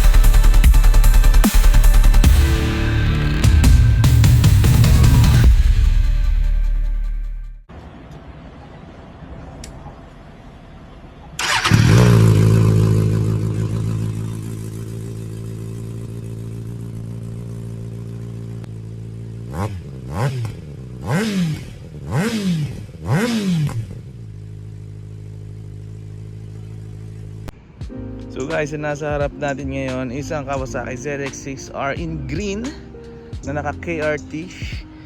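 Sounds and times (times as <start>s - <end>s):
engine revving: 0.0s - 6.2s, 11.4s - 27.5s
motorcycle engine starting and idling: 11.4s - 27.5s.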